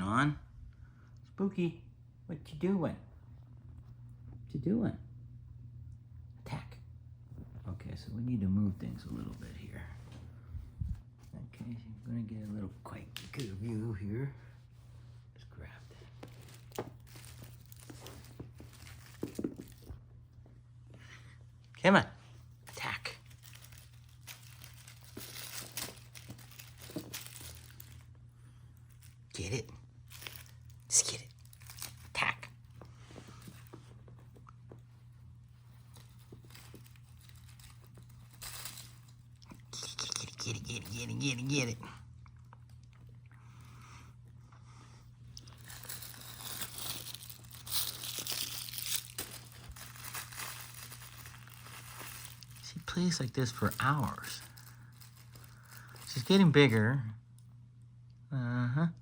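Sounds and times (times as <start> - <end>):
low steady hum: 0.0 - 59.0
crinkly toy rustling: 12.5 - 21.3, 22.2 - 41.8, 45.2 - 57.4.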